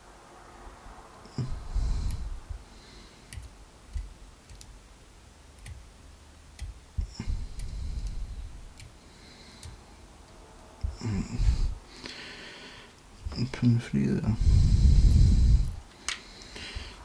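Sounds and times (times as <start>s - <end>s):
small metallic clicks: 3.3s - 4.8s, 6.5s - 9.8s.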